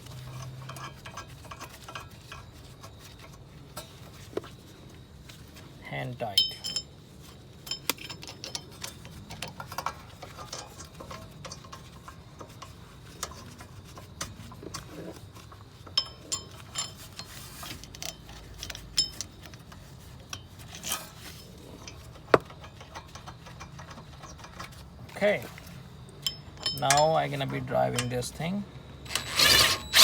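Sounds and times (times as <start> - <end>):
clicks of metal parts and tools: 0.1 - 2.5, 7.6 - 14.9, 15.8 - 21.2, 21.8 - 30.0
sharp metallic clinks: 6.3 - 7.0, 26.2 - 28.2, 29.0 - 30.0.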